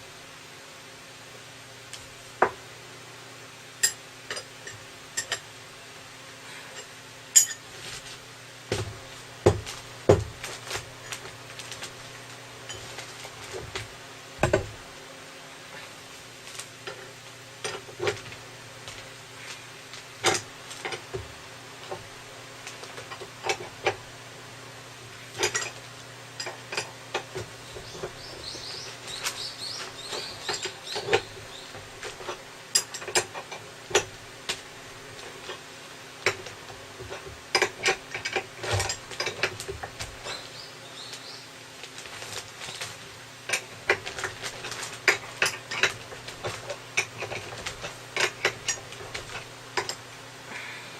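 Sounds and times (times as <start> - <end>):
steady low hum: 0.0 - 50.9
hand tools clinking on metal: 6.8 - 7.6, 26.4 - 34.1, 43.5 - 50.0.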